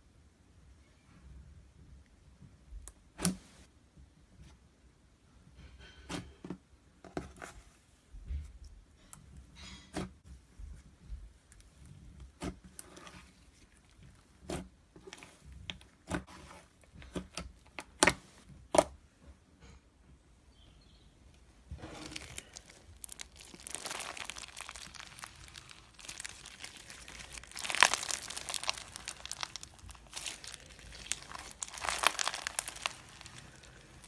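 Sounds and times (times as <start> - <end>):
slime popping and crackling: 21.8 - 34.0.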